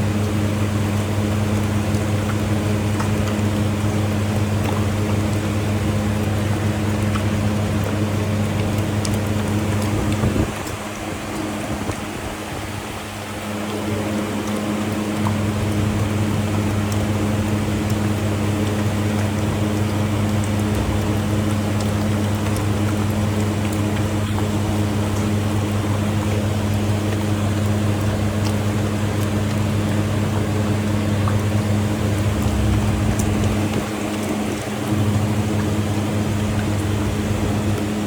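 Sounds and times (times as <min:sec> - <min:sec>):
low mechanical hum: 0:00.0 - 0:38.0
background rush: 0:31.5 - 0:35.4.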